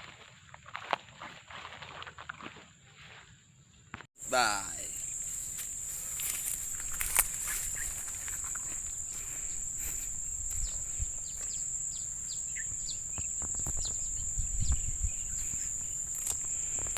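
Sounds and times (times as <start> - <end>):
crickets trilling: 4.2 - 16.9
low bumps: 5.6 - 16.9
small bird chirping: 6.2 - 16.9.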